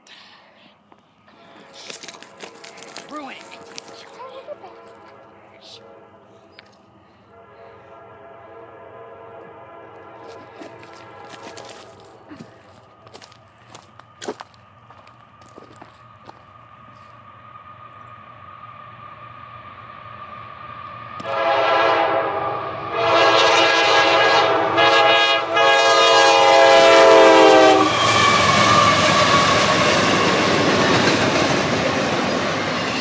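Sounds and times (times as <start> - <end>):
train rumble: 0.8 - 33.0
train rushing and clattering past: 0.9 - 33.0
locomotive horn blowing: 1.3 - 6.6, 7.2 - 12.2, 21.2 - 30.6.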